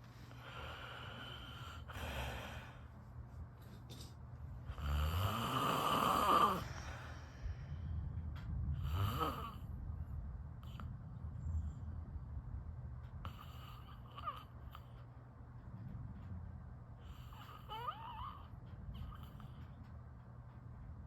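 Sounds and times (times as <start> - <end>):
person snoring: 4.7 - 7.1, 8.8 - 9.6.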